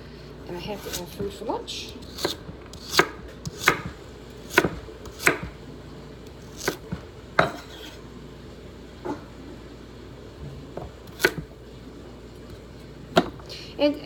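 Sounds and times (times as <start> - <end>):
knife chopping on cutting board: 2.0 - 5.6, 6.4 - 8.0, 10.7 - 11.5.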